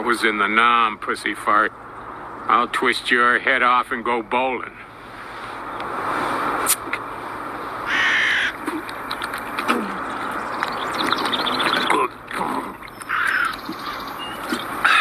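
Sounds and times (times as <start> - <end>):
outdoor background noise: 0.0 - 15.0
crow cawing: 7.8 - 8.6, 13.0 - 14.2, 14.8 - 15.0.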